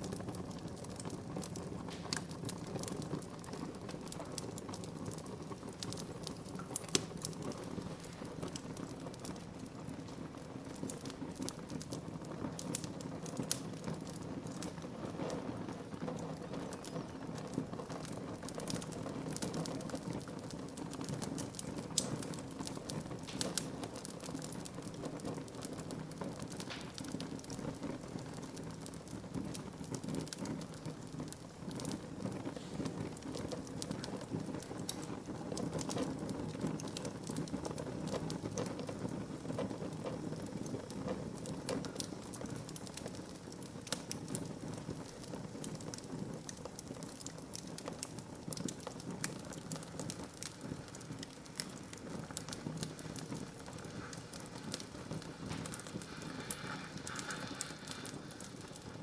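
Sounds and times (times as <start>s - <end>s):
burning logs crackling and popping: 0.0s - 59.0s
fire flames rushing: 17.6s - 59.0s.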